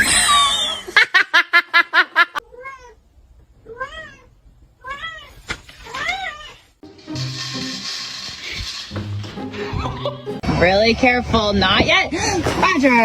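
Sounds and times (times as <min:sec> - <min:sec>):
cat meowing: 0:02.5 - 0:03.0, 0:03.6 - 0:06.6.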